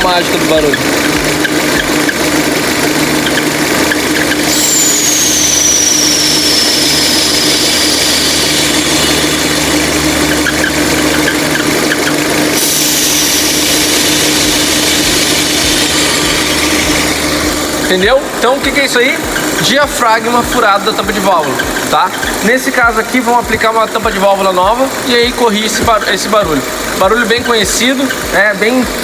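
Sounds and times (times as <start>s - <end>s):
engine idling hum and whine: 0.0s - 29.0s
high whistle sliding down: 4.4s - 9.2s.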